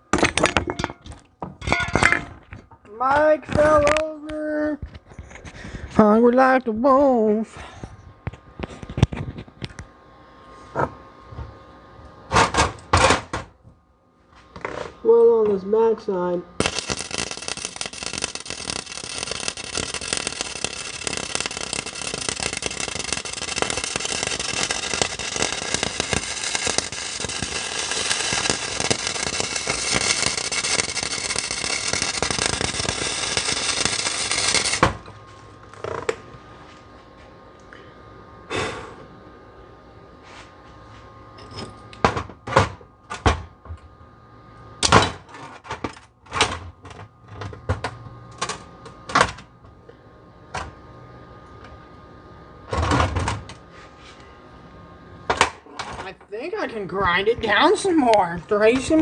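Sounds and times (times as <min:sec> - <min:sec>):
welder crackling: 0:14.8 - 0:36.4, 0:55.3 - 0:59.0.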